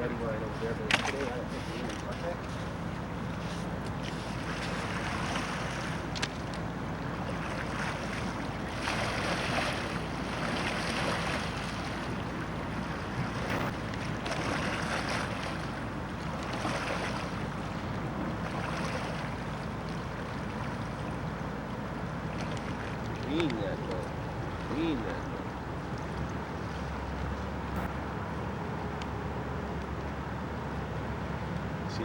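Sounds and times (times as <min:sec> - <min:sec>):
wind on microphone: 0:11.7 - 0:14.6, 0:27.7 - 0:28.0.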